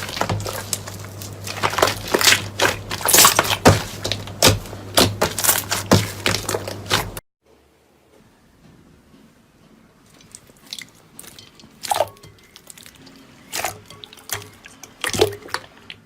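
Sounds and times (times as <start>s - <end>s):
crunchy material crushed by hand: 0.0s - 7.2s.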